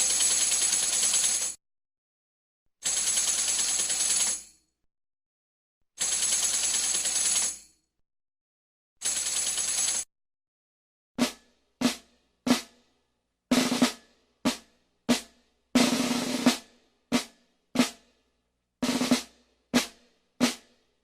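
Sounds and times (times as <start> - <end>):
drum strokes and rolls: 11.2 - 12.7, 13.5 - 18.0, 18.8 - 20.6.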